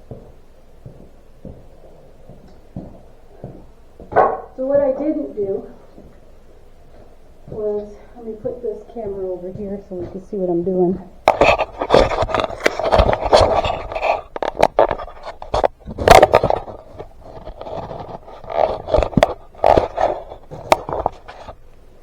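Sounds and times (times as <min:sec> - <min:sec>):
sharp handling knocks: 0:02.3 - 0:05.0
camera handling scraping: 0:11.3 - 0:21.6.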